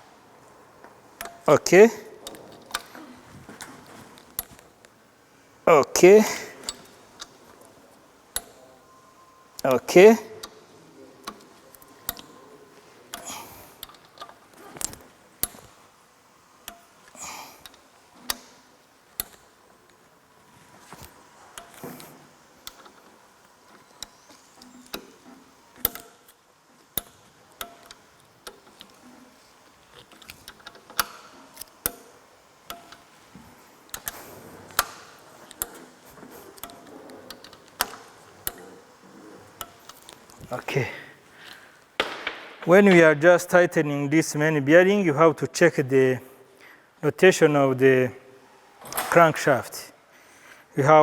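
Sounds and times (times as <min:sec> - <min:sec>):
torque wrench clicks: 0:13.1 - 0:15.8, 0:19.2 - 0:19.6, 0:23.7 - 0:26.4, 0:27.0 - 0:29.0, 0:29.9 - 0:33.2, 0:36.6 - 0:38.7.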